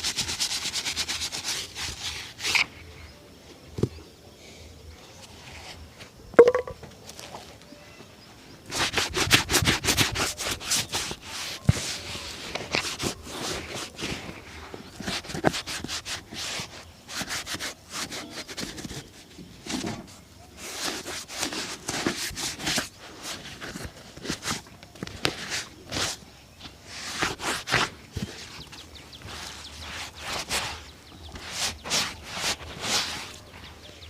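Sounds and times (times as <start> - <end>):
brush rubbing shoe: 0.0 - 2.7, 8.7 - 19.1, 26.9 - 33.6.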